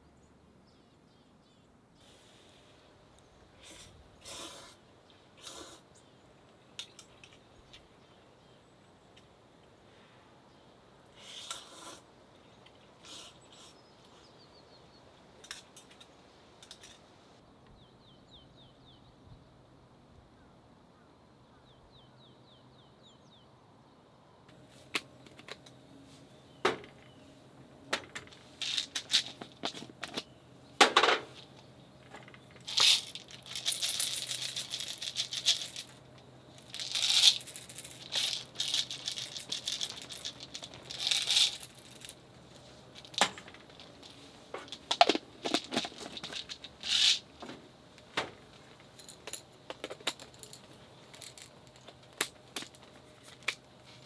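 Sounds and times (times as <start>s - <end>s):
cooking gear clicks and rattles: 27.9s - 54.0s
packaging crinkling: 32.6s - 36.0s, 36.6s - 42.2s.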